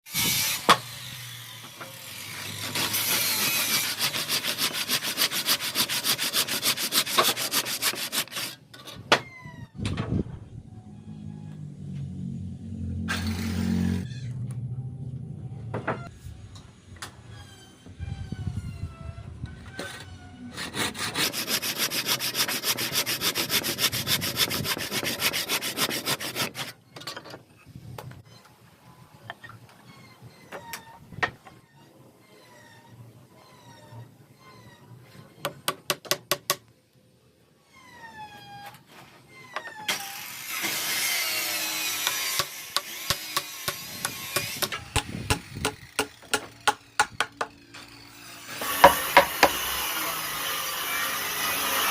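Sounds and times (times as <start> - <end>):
tool scraping wood: 2.3 - 9.0, 19.7 - 26.8, 48.5 - 49.9
wood sanding by hand: 2.6 - 8.6, 20.5 - 26.7, 48.6 - 51.9.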